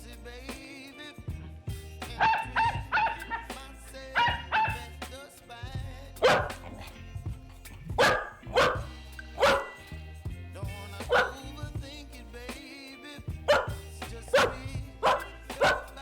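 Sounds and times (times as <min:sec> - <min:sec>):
background music: 0:00.0 - 0:16.0
dog barking: 0:02.2 - 0:03.4, 0:04.2 - 0:04.9, 0:06.2 - 0:06.9, 0:08.0 - 0:09.8, 0:11.1 - 0:11.4, 0:13.5 - 0:15.9.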